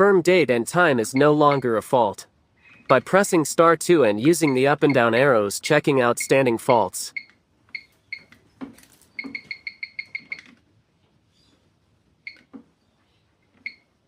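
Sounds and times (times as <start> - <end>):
keypad beeps: 0.9 - 1.9, 2.6 - 3.2, 4.2 - 5.2, 6.0 - 8.4, 9.2 - 10.5, 12.2 - 12.5, 13.6 - 14.0.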